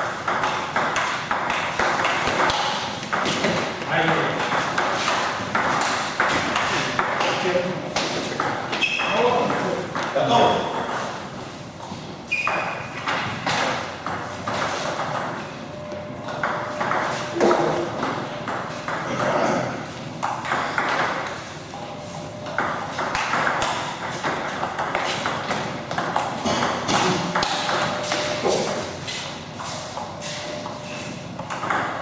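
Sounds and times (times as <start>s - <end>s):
table tennis balls clicking: 0.2s - 7.4s, 20.2s - 21.5s, 22.5s - 28.8s, 31.4s - 32.0s.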